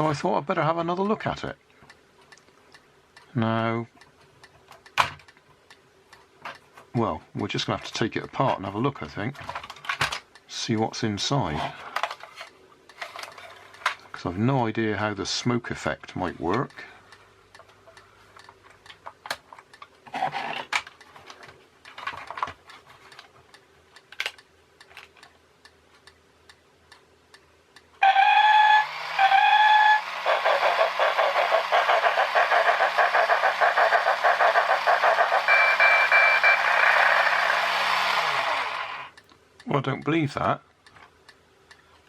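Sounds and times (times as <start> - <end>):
toy handling clicks: 20.5 - 25.3
steam train chuffing effect: 28.0 - 39.1
toy train whistle toots: 28.0 - 39.1
small drive motor hum: 28.0 - 39.2.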